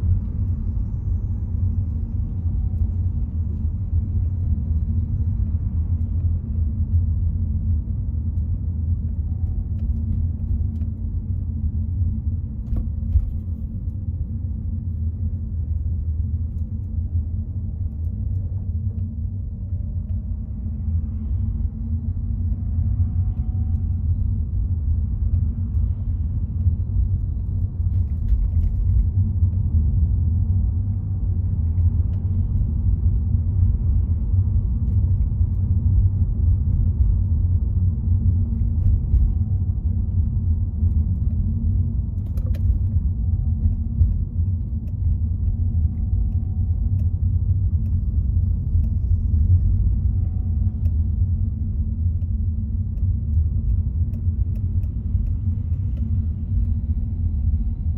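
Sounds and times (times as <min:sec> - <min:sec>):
car engine and tyre rumble: 0:00.0 - 0:57.9.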